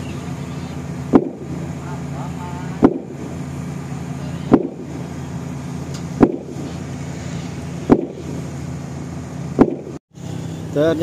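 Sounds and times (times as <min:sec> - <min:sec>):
engines humming: 0:00.0 - 0:11.0
heavy boom: 0:01.1 - 0:01.6, 0:02.8 - 0:03.3, 0:04.5 - 0:05.1, 0:06.2 - 0:06.7, 0:07.8 - 0:08.4.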